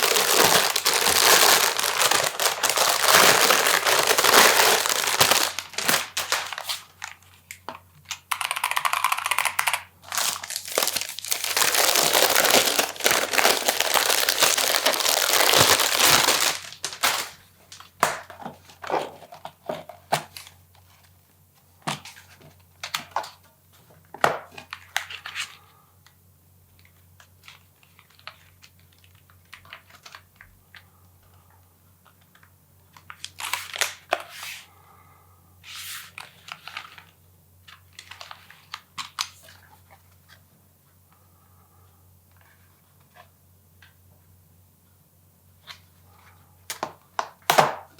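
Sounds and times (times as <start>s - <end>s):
wrapping crinkling: 0.0s - 7.6s, 8.7s - 18.1s.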